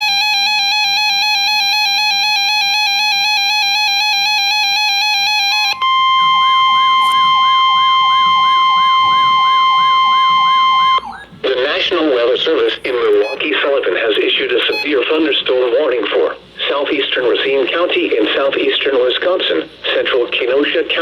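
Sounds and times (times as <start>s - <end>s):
steady single-pitch alarm tone: 0.0s - 11.4s, 13.2s - 13.6s, 14.6s - 15.1s
electronic warbling alarm tone: 3.9s - 11.4s
sweeping siren-like tone: 5.7s - 11.2s.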